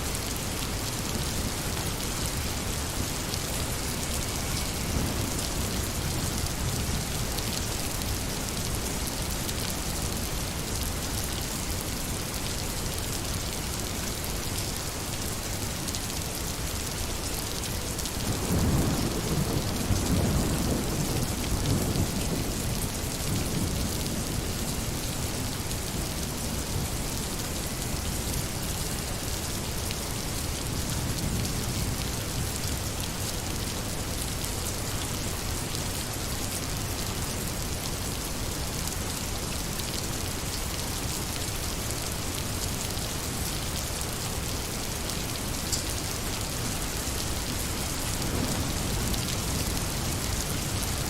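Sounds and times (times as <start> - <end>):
steady rain falling: 0.0 - 51.0
thunder rumbling: 47.7 - 51.0.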